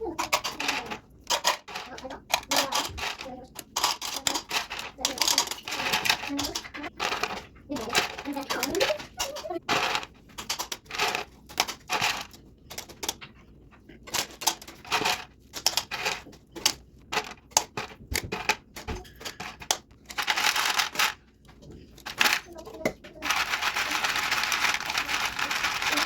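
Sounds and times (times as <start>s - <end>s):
clicks taps and rustles: 0.0s - 26.0s.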